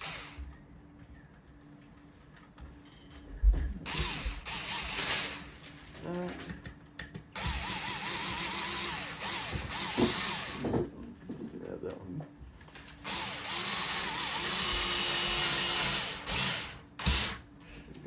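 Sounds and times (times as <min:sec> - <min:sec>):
electric screwdriver driving screws: 0:00.0 - 0:00.4, 0:03.9 - 0:05.5, 0:07.4 - 0:10.6, 0:13.0 - 0:17.4.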